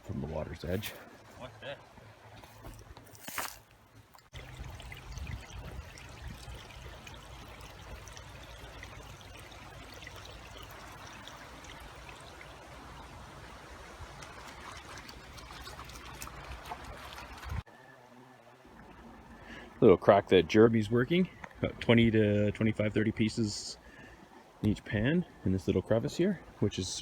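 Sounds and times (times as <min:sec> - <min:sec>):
flowing river water: 0:00.0 - 0:20.2.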